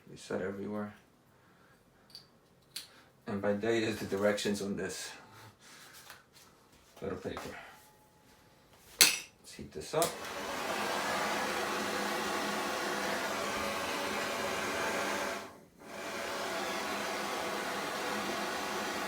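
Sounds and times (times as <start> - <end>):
gas torch flame hissing: 10.0 - 19.0.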